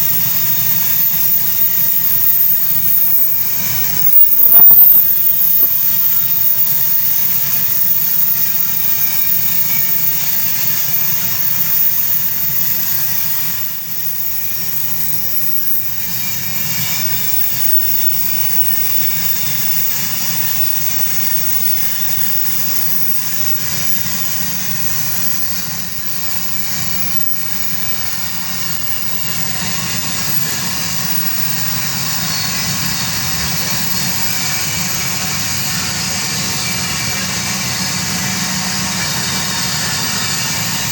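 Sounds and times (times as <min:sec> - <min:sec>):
wheels hissing on rails: 0:00.0 - 0:40.9.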